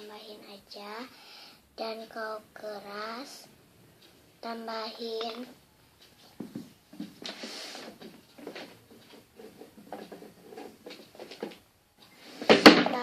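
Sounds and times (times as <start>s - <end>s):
loud crackling thump: 12.4s - 13.0s.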